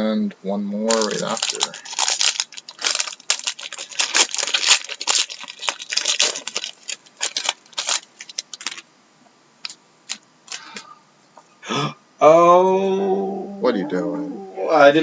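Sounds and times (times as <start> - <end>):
plastic wrapping crinkling and tearing: 0.9 - 8.8, 9.6 - 10.8.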